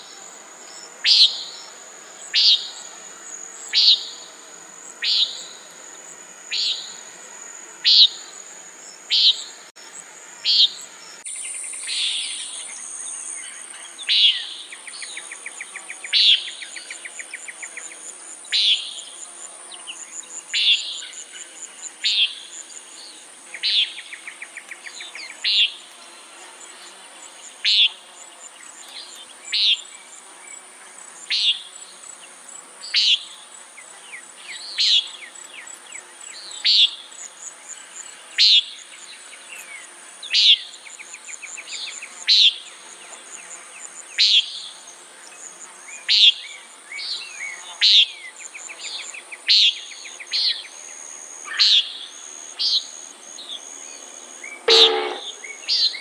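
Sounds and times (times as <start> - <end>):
high insect trill: 0.0 - 56.0
bird giving nasal peent call: 54.7 - 55.3.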